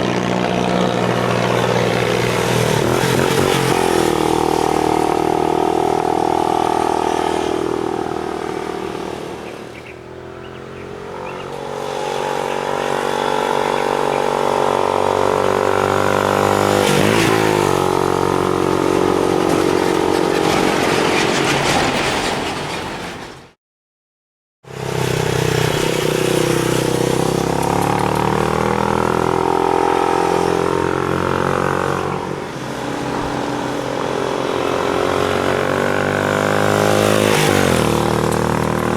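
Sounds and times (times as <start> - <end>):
motorcycle engine revving: 0.0 - 21.4, 24.6 - 38.9.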